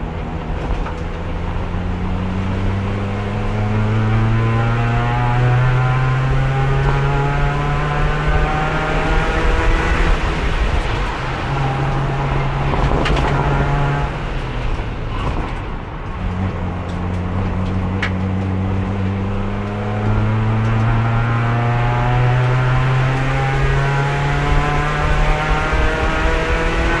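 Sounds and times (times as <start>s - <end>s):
race car engine revving: 0.0s - 27.0s.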